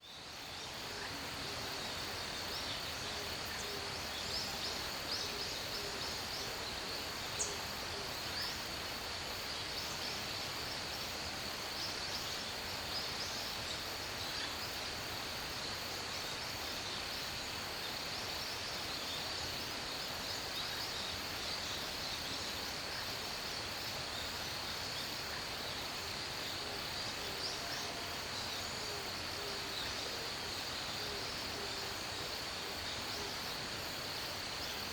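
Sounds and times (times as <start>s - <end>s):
background hiss: 0.0s - 34.9s.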